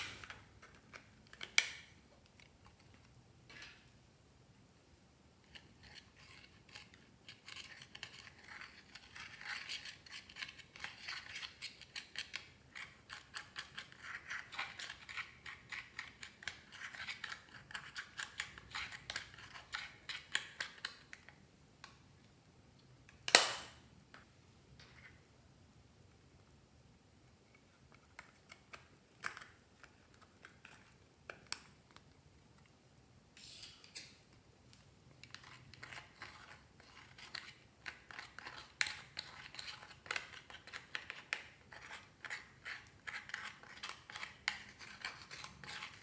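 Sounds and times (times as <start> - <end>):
slime loud sharp pop: 23.3 - 23.7.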